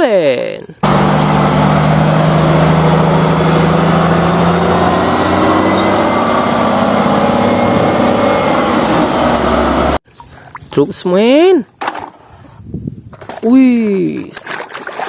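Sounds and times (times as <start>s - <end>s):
heavy truck engine running: 0.8s - 10.0s.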